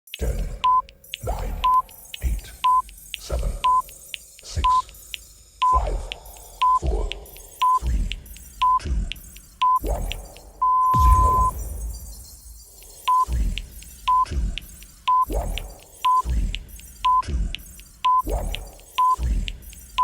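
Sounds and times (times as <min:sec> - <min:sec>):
deep effected voice counting: 0:00.1 - 0:11.6, 0:12.8 - 0:19.8
short electronic beeps: 0:00.5 - 0:02.8, 0:03.6 - 0:04.0, 0:04.6 - 0:04.9, 0:05.6 - 0:06.8, 0:07.6 - 0:07.9, 0:08.6 - 0:08.8, 0:09.6 - 0:17.3, 0:18.0 - 0:20.0.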